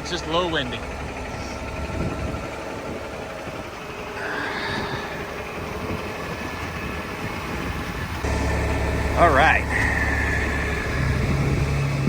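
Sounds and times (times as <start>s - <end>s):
truck engine and road noise: 0.0s - 12.0s.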